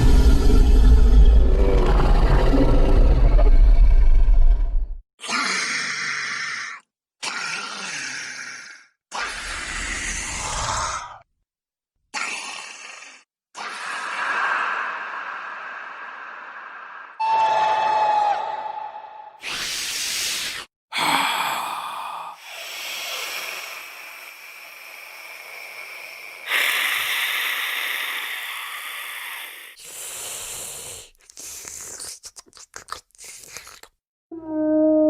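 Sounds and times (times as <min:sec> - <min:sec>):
breathy hissing creature noises: 0:05.3 - 0:11.3, 0:12.2 - 0:17.2, 0:19.4 - 0:33.9.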